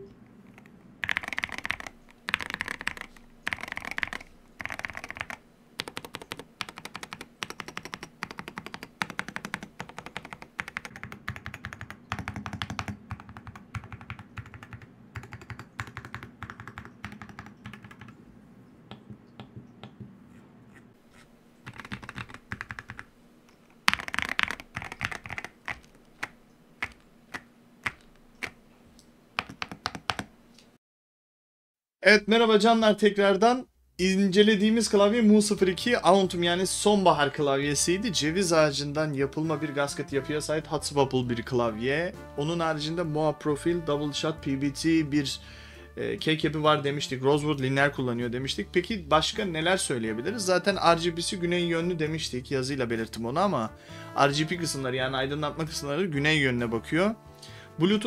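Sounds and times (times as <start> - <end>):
mechanical keyboard typing: 0.5 - 18.2, 21.6 - 28.6, 29.4 - 30.3.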